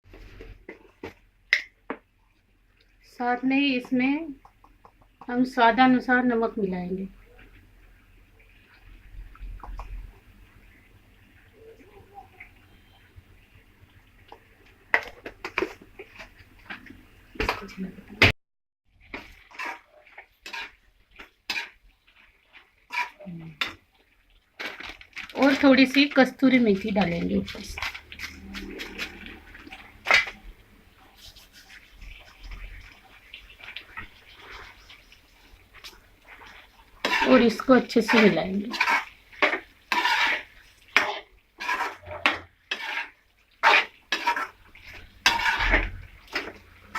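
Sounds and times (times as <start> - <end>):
spoon scraping cooking pan: 19.0 - 23.8, 24.6 - 46.9.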